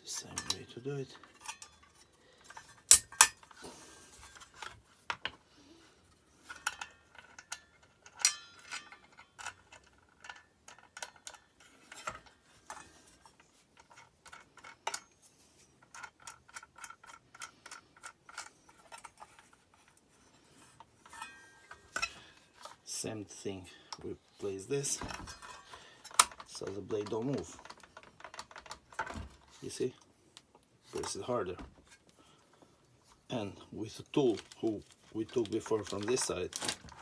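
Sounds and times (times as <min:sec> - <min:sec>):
metal saw parts clinking: 0:00.0 - 0:04.8, 0:06.4 - 0:15.2, 0:20.6 - 0:22.9, 0:23.9 - 0:30.0, 0:33.2 - 0:37.0.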